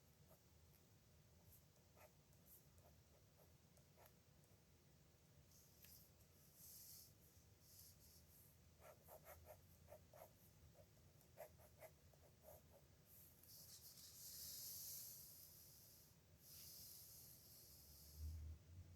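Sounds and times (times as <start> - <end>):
pen scratching on paper: 8.8 - 15.0.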